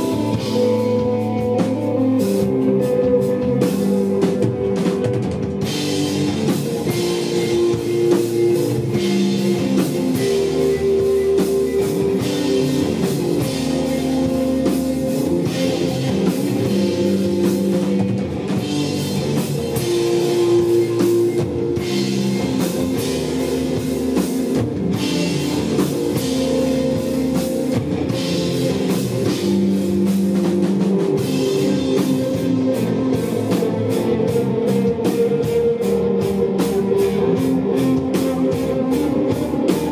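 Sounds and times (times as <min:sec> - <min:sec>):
bass: 0:00.0 - 0:39.9
drum kit: 0:00.0 - 0:39.9
electric guitar: 0:00.0 - 0:39.9.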